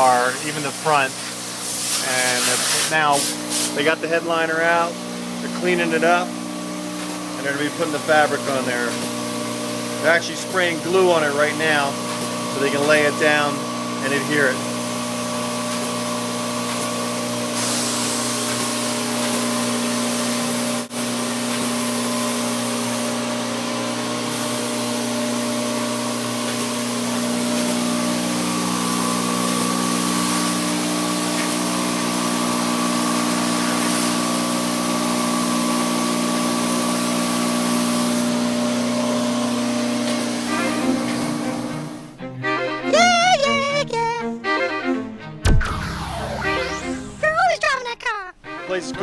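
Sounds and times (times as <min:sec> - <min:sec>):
spray gun hissing: 0:00.0 - 0:03.8
machine humming: 0:45.5 - 0:47.3.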